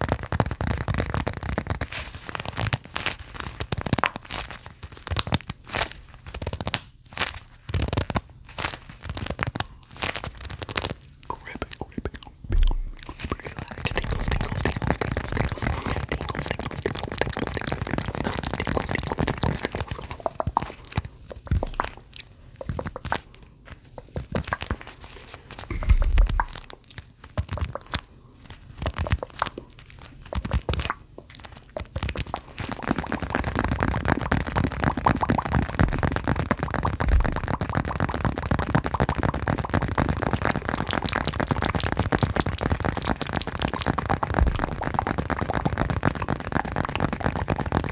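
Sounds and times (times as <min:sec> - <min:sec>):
pellet filling crunching: 0:00.0 - 0:47.9
soft low thumps: 0:11.3 - 0:16.6, 0:21.5 - 0:22.0, 0:25.7 - 0:26.8, 0:37.0 - 0:37.5, 0:44.3 - 0:45.1.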